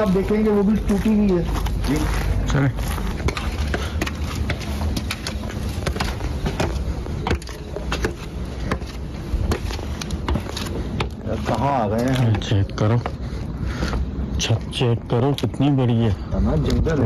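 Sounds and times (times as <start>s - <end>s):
footsteps crunching on rough ground: 0.0s - 14.1s.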